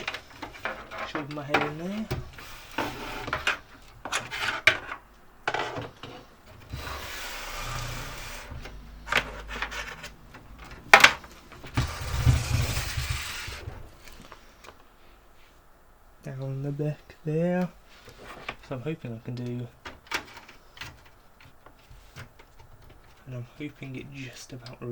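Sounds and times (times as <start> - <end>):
computer parts clicking and knocking: 0.0 - 6.1
hands and cables rustling: 0.0 - 6.8, 8.5 - 14.9, 17.6 - 24.9.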